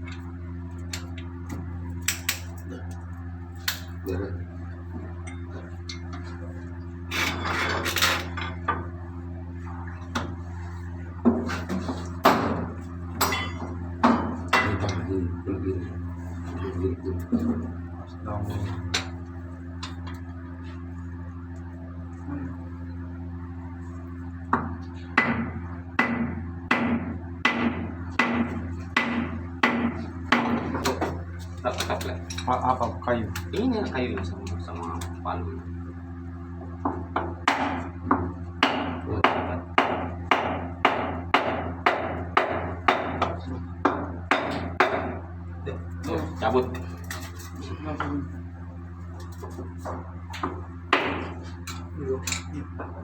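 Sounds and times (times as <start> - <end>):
low mechanical hum: 0.0 - 53.0
tools scraping engine parts: 7.0 - 8.5, 46.1 - 47.7
hammer striking metal: 13.2 - 15.0.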